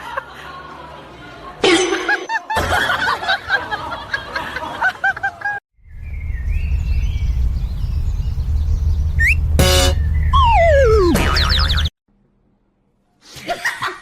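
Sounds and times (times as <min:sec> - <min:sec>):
steady low rumble: 0:05.8 - 0:11.2
birds chirping: 0:05.8 - 0:11.9.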